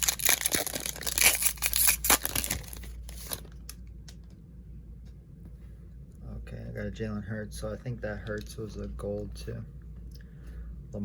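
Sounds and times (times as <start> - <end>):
plastic wrapper tearing and crinkling: 0.0 - 3.8.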